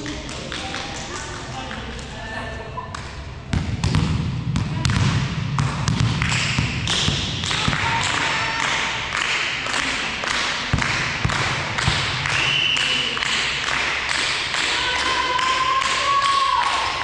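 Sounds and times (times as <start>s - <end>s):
volleyball being struck: 3.5s - 8.4s, 10.7s - 12.6s.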